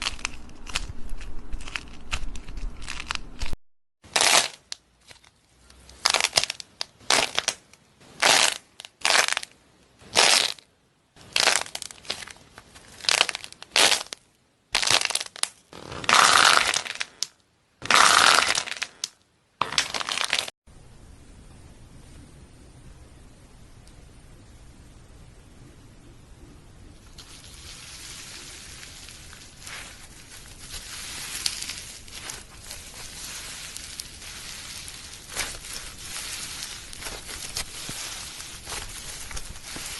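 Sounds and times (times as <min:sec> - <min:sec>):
crunchy slime crackling: 0:00.0 - 0:10.6, 0:11.2 - 0:20.5, 0:27.1 - 0:39.9.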